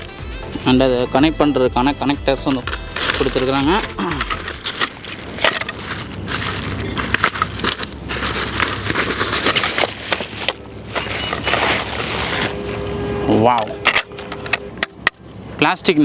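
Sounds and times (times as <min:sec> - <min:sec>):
plastic packaging crinkling: 0:02.4 - 0:12.6
plastic pieces knocking: 0:02.6 - 0:11.6.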